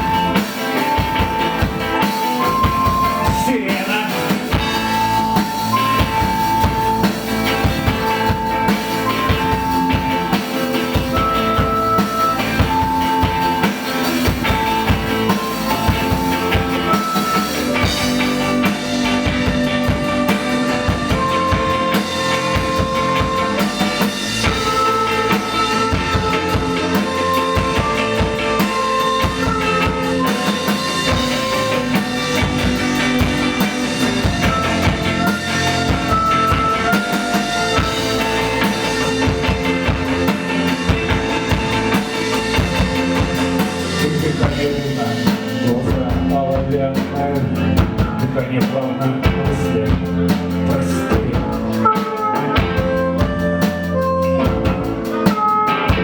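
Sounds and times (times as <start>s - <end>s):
lead melody of held notes: 0.0s - 45.8s
drum kit beat: 0.0s - 56.0s
rock band playing: 0.0s - 56.0s.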